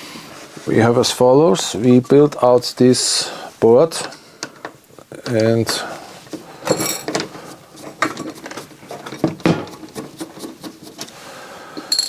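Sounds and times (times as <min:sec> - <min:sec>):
circuit board and tools clattering: 0:06.6 - 0:11.1.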